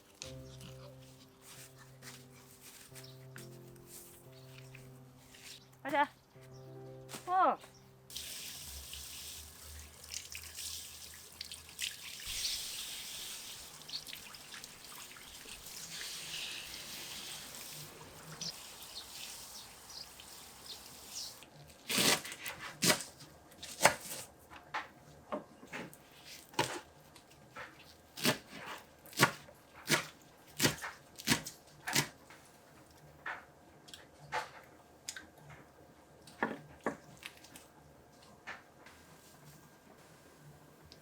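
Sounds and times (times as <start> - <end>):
water dripping and trickling: 8.1 - 21.4.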